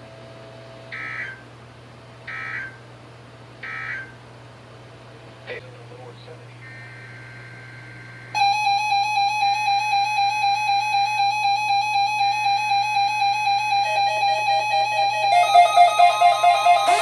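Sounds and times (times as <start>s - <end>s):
electronic keyboard notes: 11.2s - 17.0s.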